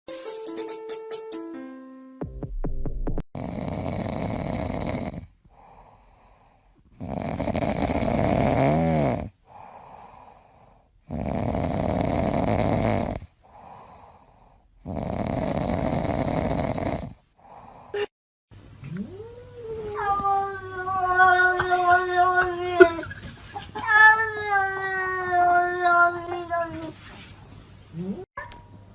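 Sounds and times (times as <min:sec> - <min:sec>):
cat snoring breaths: 0:03.4 - 0:18.0
cat yowling: 0:19.0 - 0:23.1.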